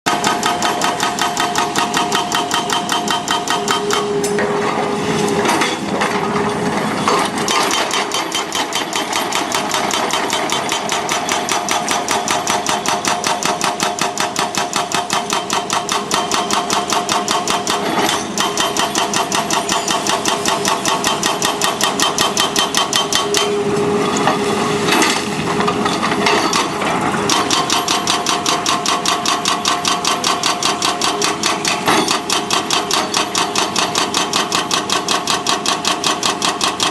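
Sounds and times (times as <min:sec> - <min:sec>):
excavator working: 0:00.1 - 0:36.9
steady mechanical whine: 0:01.1 - 0:13.0, 0:17.7 - 0:35.1.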